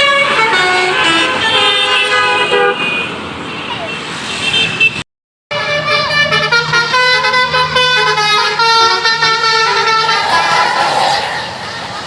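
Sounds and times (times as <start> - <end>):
musical bus horn tune: 0.0 - 3.0, 5.5 - 10.4
bus engine running: 5.6 - 12.0.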